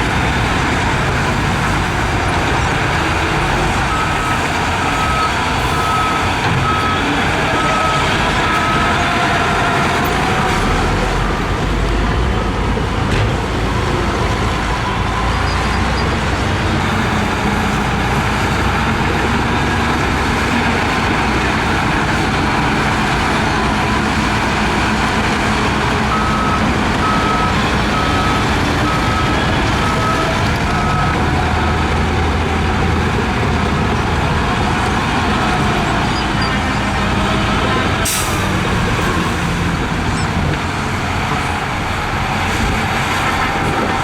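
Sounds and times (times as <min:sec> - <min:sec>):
heavy diesel machinery rumbling: 0:00.0 - 0:44.0
reversing alarm beeping: 0:03.4 - 0:10.4, 0:13.6 - 0:16.2, 0:25.7 - 0:32.0.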